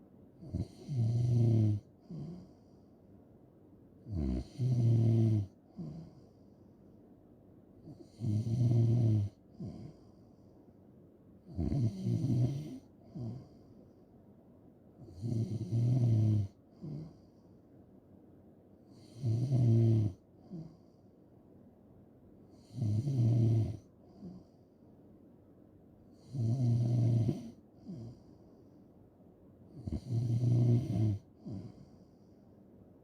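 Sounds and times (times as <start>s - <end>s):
person snoring: 0.4s - 2.6s, 4.1s - 6.2s, 7.9s - 10.0s, 11.5s - 13.6s, 15.0s - 17.2s, 19.0s - 20.8s, 22.6s - 24.4s, 26.2s - 28.2s, 29.8s - 31.9s.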